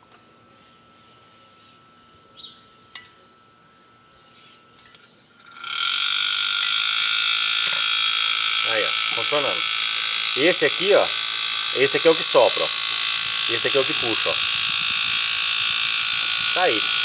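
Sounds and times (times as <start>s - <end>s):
compressor humming faintly: 0.1s - 17.0s
compressor buzzing hiss: 5.4s - 17.0s.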